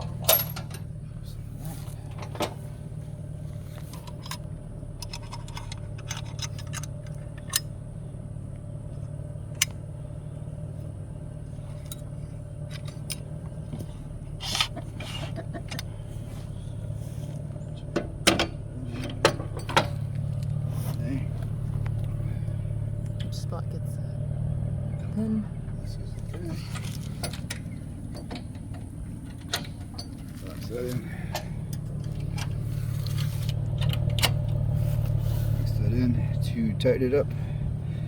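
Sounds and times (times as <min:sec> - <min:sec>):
hitch chains clinking: 0:00.0 - 0:01.0, 0:03.7 - 0:07.7, 0:25.8 - 0:37.8
low engine hum: 0:00.0 - 0:38.0.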